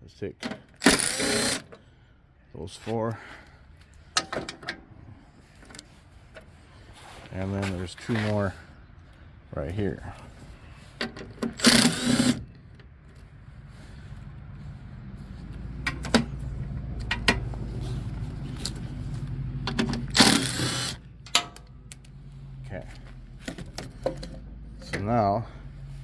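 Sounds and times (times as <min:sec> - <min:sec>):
socket wrench whirring: 0:00.8 - 0:01.8, 0:11.4 - 0:12.5, 0:20.0 - 0:21.4
socket wrench clicking: 0:19.9 - 0:22.1.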